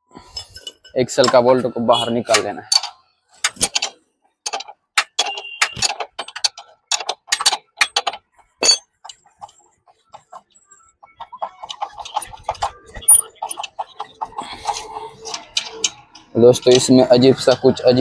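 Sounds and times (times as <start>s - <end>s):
spanner clicking on metal bolt: 2.3s - 9.2s.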